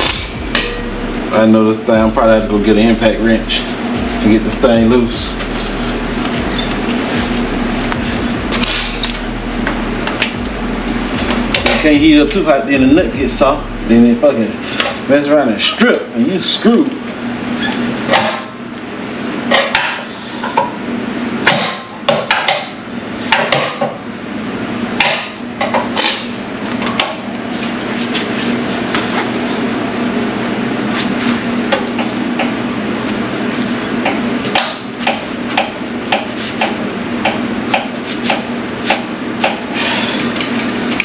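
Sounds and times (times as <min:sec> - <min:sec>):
steady low hum: 0:00.0 - 0:15.1.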